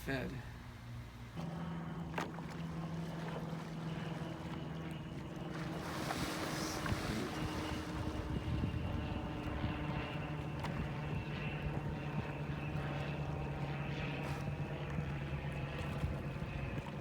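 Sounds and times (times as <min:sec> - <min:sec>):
wind: 0:00.0 - 0:17.0
distant motor engine droning: 0:00.2 - 0:17.0
water lapping: 0:00.9 - 0:17.0
water splashing: 0:02.2 - 0:09.7.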